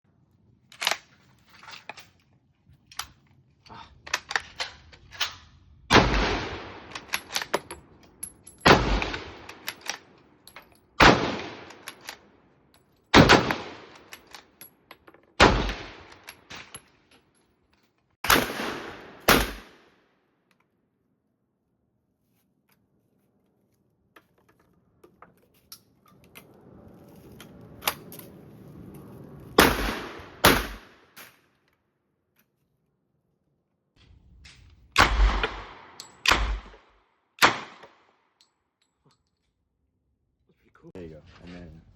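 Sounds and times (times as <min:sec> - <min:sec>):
gunshots: 0:05.9 - 0:07.4, 0:08.7 - 0:09.7, 0:11.0 - 0:11.8, 0:13.2 - 0:14.0, 0:15.4 - 0:16.1, 0:18.2 - 0:19.9, 0:29.6 - 0:31.2, 0:35.0 - 0:38.0.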